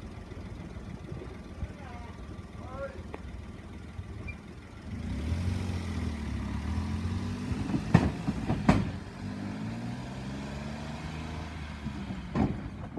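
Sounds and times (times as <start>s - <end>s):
train rumbling: 7.5s - 9.2s.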